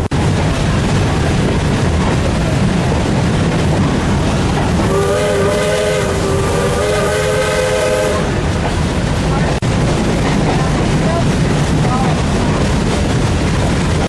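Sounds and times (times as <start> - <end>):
moving train rumble: 0.0 - 14.0
steam locomotive whistle: 4.8 - 8.4.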